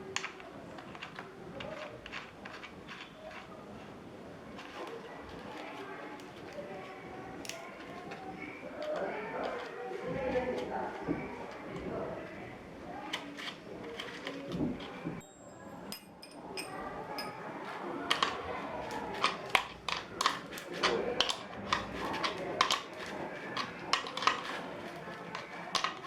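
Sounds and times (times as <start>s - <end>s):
clicks and knocks of small parts: 0.0s - 3.5s, 4.5s - 9.7s, 18.0s - 26.0s
rustling handling: 0.0s - 12.0s, 12.9s - 15.2s, 17.4s - 26.0s.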